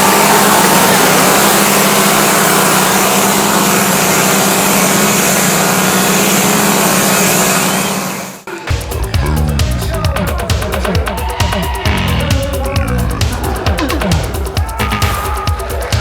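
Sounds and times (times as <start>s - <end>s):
chainsaw engines running: 0.0s - 16.0s
crowd noise: 8.6s - 16.0s.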